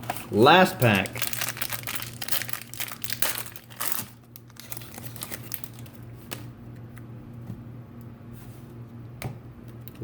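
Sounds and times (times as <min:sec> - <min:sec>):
cards rustling and ticking: 0:00.0 - 0:06.5
wrapper tearing and crinkling: 0:00.1 - 0:06.0.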